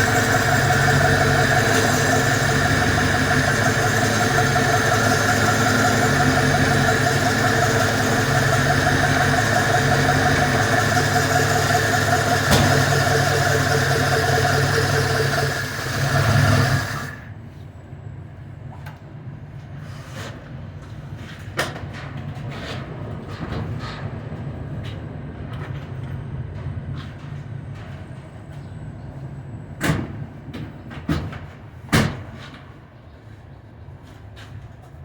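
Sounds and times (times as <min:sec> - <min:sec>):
car engine idling: 0:00.0 - 0:17.3.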